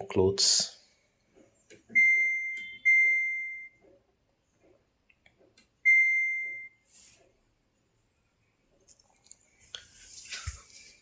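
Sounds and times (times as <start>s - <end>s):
washing machine panel beeps: 1.7s - 3.8s, 5.8s - 6.8s.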